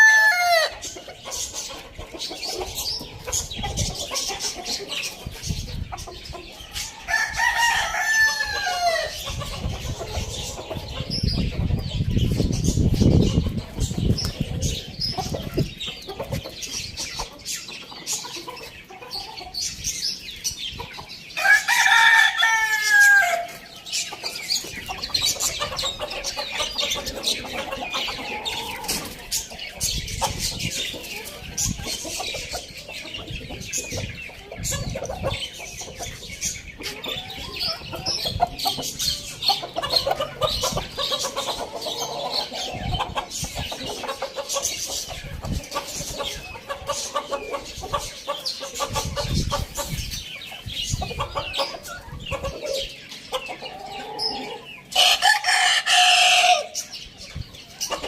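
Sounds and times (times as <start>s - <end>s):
chickens clucking: 0.0s - 58.0s
rooster crowing: 7.0s - 9.2s, 21.4s - 23.5s, 55.0s - 56.8s.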